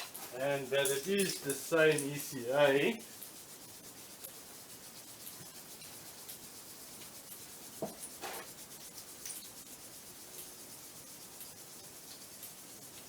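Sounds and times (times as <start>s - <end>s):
light knocks and scrapes: 0.0s - 1.6s, 7.8s - 8.6s
faint steady hiss: 0.0s - 13.0s.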